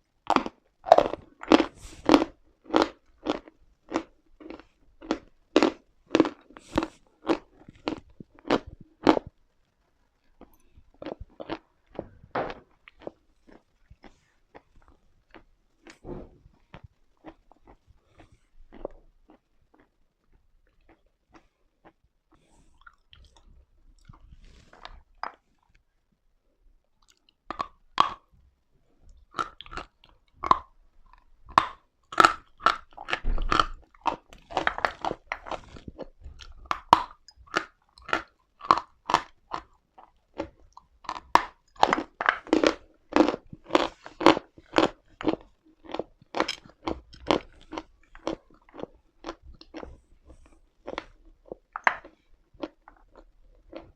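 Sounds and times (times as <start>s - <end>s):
chalk being chewed crunching: 0.3s - 9.3s, 10.4s - 12.0s, 29.3s - 53.9s.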